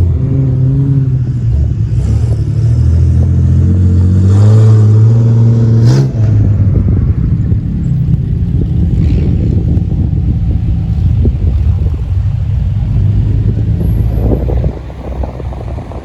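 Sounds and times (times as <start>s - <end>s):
car engine running: 4.9s - 16.0s.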